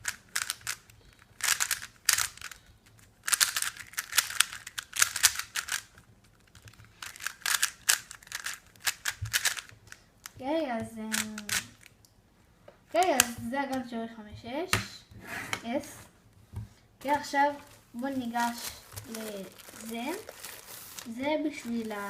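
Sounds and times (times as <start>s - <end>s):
plastic puzzle cube clacking: 0.0s - 10.4s, 11.1s - 11.9s.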